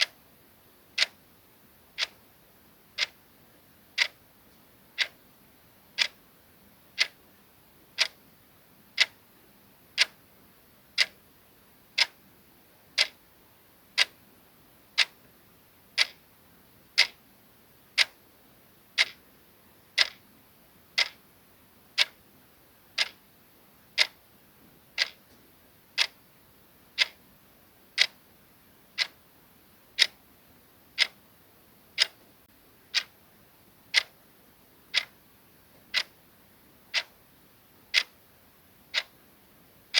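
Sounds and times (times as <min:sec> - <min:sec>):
clock ticking: 0:01.0 - 0:01.2, 0:02.0 - 0:02.2, 0:03.0 - 0:03.2, 0:04.0 - 0:04.2, 0:04.9 - 0:05.2, 0:05.9 - 0:06.2, 0:07.0 - 0:07.2, 0:08.0 - 0:08.2, 0:09.0 - 0:09.2, 0:10.0 - 0:10.2, 0:11.0 - 0:11.2, 0:12.0 - 0:12.2, 0:13.0 - 0:13.2, 0:13.9 - 0:14.2, 0:15.0 - 0:15.2, 0:16.0 - 0:16.2, 0:17.0 - 0:17.2, 0:18.0 - 0:18.2, 0:19.0 - 0:19.2, 0:20.0 - 0:20.2, 0:21.0 - 0:21.2, 0:22.0 - 0:22.2, 0:23.0 - 0:23.2, 0:24.0 - 0:24.2, 0:24.9 - 0:25.3, 0:26.0 - 0:26.2, 0:27.0 - 0:27.2, 0:28.0 - 0:28.2, 0:29.0 - 0:29.2, 0:30.0 - 0:30.2, 0:31.0 - 0:31.2, 0:32.0 - 0:32.2, 0:32.9 - 0:33.2, 0:33.9 - 0:34.2, 0:34.9 - 0:35.2, 0:35.9 - 0:36.2, 0:36.9 - 0:37.2, 0:37.9 - 0:38.2, 0:38.9 - 0:39.2.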